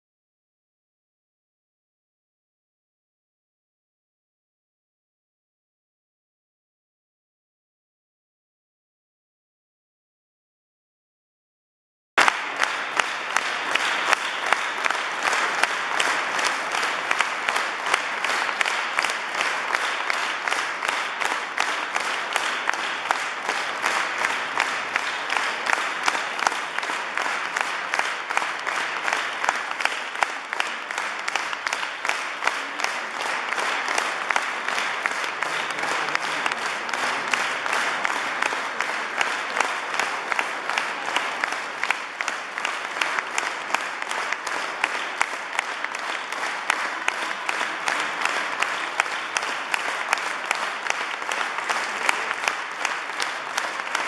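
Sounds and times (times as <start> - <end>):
audience applauding: 12.2 - 54.0.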